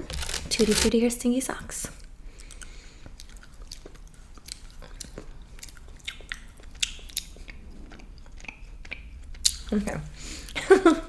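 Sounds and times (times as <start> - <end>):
person chewing with wet clicks: 2.4 - 9.8.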